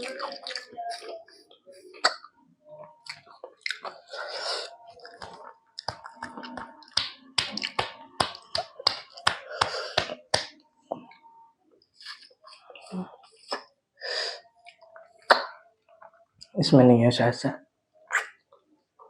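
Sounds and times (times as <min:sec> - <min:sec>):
person chewing food: 0:00.0 - 0:10.6
wet smacking mouth clicks: 0:01.9 - 0:02.3, 0:18.1 - 0:18.6.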